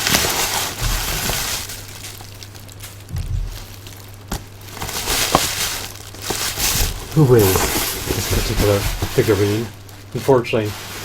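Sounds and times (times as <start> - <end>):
packaging rustling and crinkling: 0.0 - 11.0.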